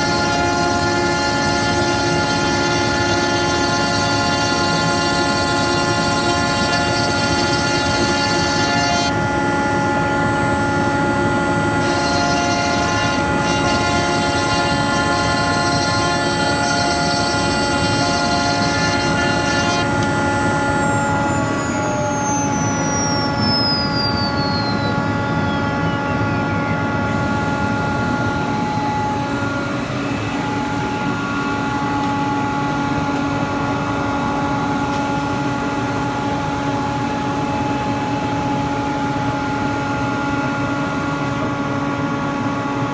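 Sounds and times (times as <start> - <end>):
router whining while cutting: 0.0 - 32.5
high whine falling in pitch: 0.0 - 42.7.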